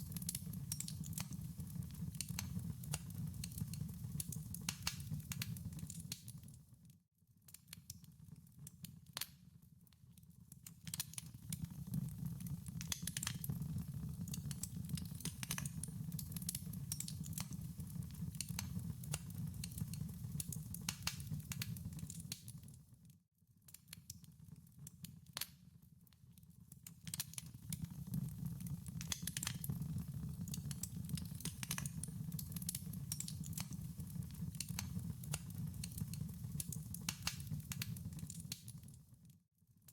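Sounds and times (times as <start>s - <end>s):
wood fire crackling and popping: 0.0s - 6.6s, 10.5s - 22.8s, 26.7s - 39.1s.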